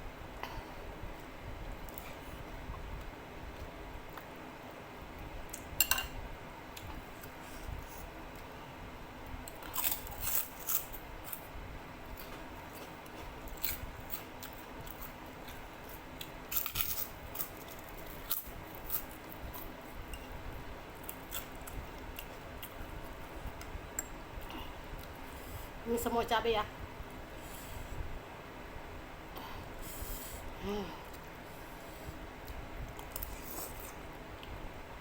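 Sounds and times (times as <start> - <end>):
person chewing and crunching: 9.5 - 11.5, 12.2 - 19.7.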